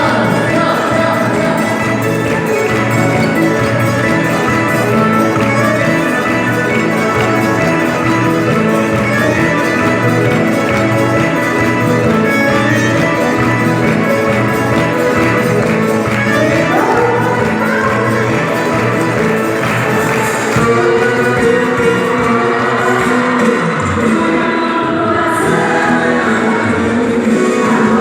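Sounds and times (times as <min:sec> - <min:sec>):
fiddle and guitar music: 0:00.0 - 0:28.0.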